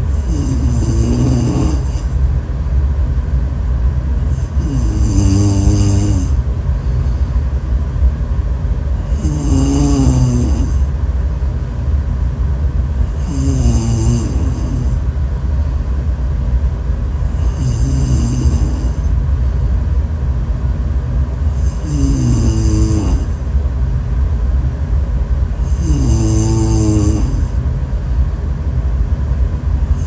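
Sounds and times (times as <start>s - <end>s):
person snoring heavily: 0.0s - 2.2s, 4.3s - 7.3s, 9.0s - 10.9s, 13.0s - 15.0s, 17.2s - 19.1s, 21.5s - 23.4s, 25.6s - 27.6s
constant deep rumble: 0.0s - 30.0s.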